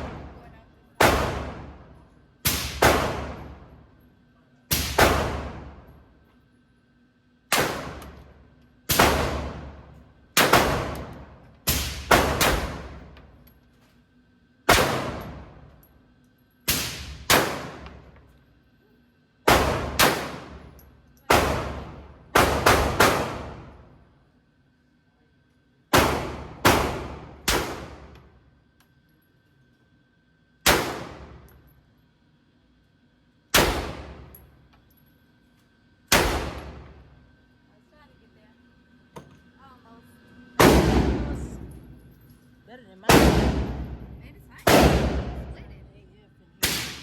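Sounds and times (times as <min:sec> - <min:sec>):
pistol shots with echo: 0:10.4 - 0:13.1, 0:14.7 - 0:15.6, 0:16.7 - 0:18.0, 0:19.5 - 0:20.6, 0:21.3 - 0:23.8, 0:25.9 - 0:28.2, 0:30.6 - 0:31.4, 0:33.5 - 0:34.3, 0:36.1 - 0:36.9, 0:40.6 - 0:41.8, 0:43.1 - 0:45.6, 0:46.6 - 0:47.0.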